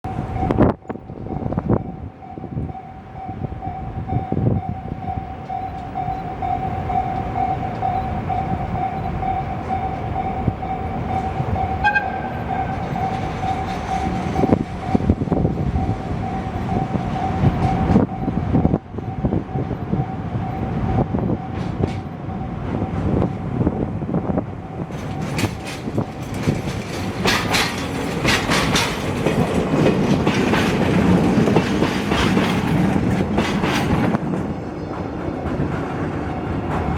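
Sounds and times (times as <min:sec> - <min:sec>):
diesel locomotive engine running: 0:00.0 - 0:36.9
level crossing alarm: 0:00.1 - 0:21.6
train wheels clacking over rail joints: 0:05.4 - 0:19.6, 0:20.4 - 0:22.2, 0:24.8 - 0:36.9.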